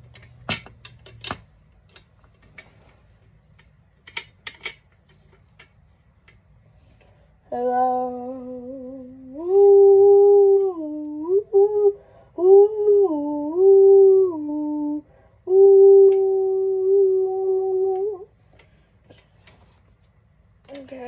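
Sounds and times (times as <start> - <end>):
person humming: 7.5 - 18.3.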